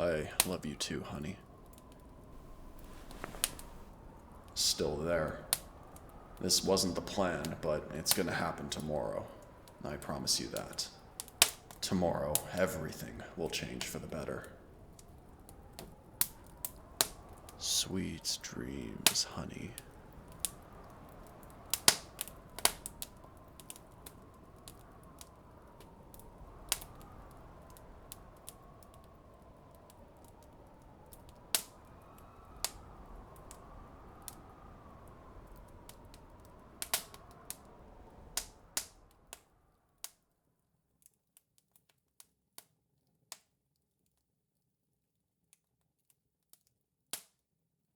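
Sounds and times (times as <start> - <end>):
low hiss: 0.0 - 39.7
fireplace crackling: 0.0 - 42.0.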